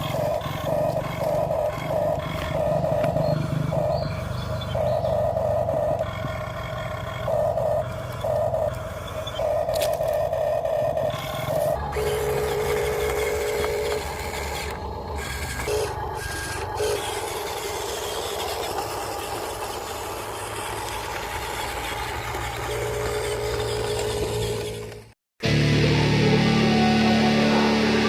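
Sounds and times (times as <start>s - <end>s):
electric motors whining: 0.0s - 28.0s.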